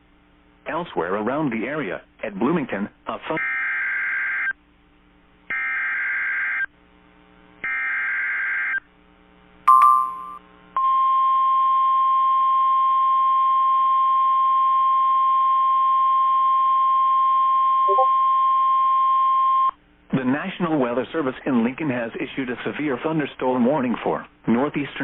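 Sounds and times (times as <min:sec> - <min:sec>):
steady alert tone: 0:17.9 - 0:18.1
brief beep: 0:17.9 - 0:18.2.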